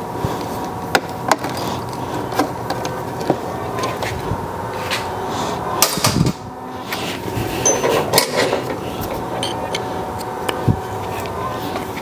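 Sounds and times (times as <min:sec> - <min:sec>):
steady hum: 0:00.0 - 0:12.0
metal tools clinking and scraping: 0:07.5 - 0:10.6.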